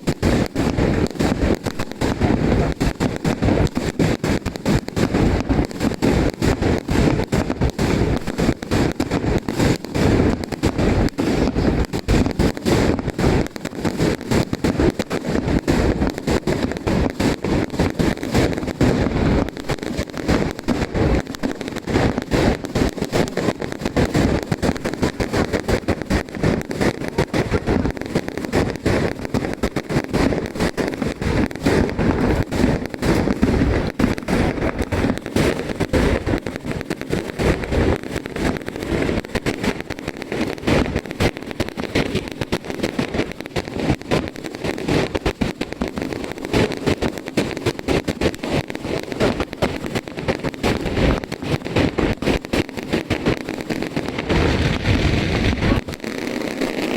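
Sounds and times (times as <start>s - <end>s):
fireworks bangs and crackles: 0.0s - 56.9s.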